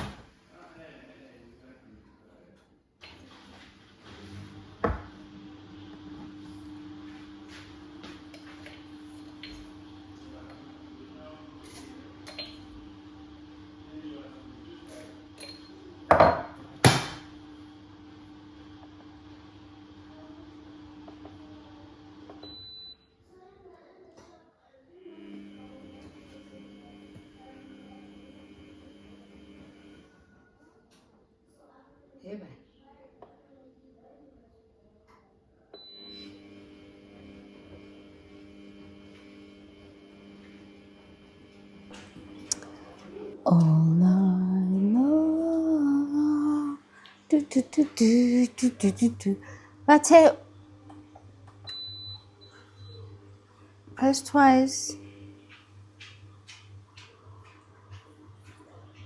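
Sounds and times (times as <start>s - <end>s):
electric appliance hum: 3.0s - 23.1s, 25.0s - 30.4s, 35.8s - 59.0s
faint steady hum: 41.0s - 55.6s.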